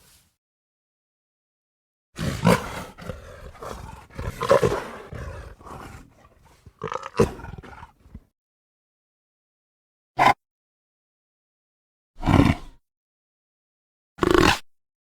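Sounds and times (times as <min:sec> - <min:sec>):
big cat roars and growls: 0:02.2 - 0:08.3, 0:12.2 - 0:12.8, 0:14.2 - 0:14.6.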